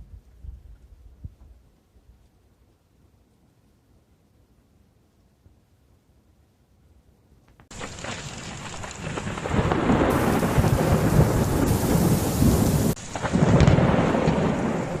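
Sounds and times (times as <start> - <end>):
wind buffeting microphone: 8.9 - 15.0.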